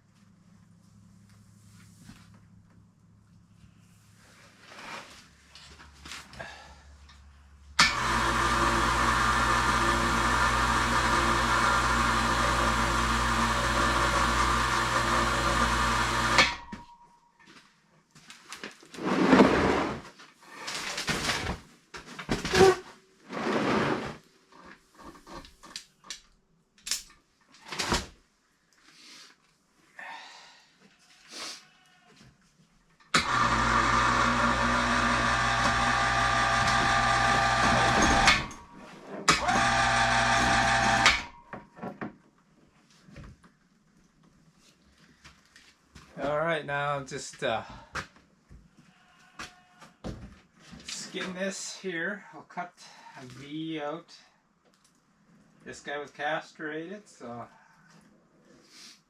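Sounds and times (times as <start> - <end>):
electric power tool motor running: 7.8 - 16.7, 33.2 - 38.7, 39.3 - 41.4.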